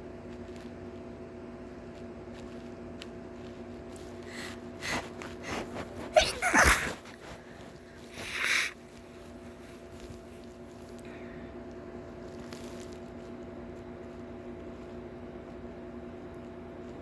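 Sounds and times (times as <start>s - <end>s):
faint steady hum: 0.0s - 17.0s
breathy sniff: 4.0s - 9.0s
sharp catching breaths: 4.2s - 8.8s
person sneezing: 4.3s - 7.4s, 8.1s - 8.8s.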